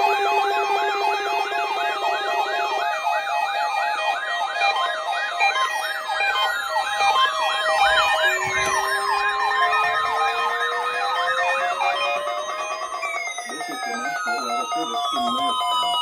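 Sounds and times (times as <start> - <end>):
warbling electronic alert tones: 7.3 - 16.0
tones gliding down in pitch: 7.6 - 15.8.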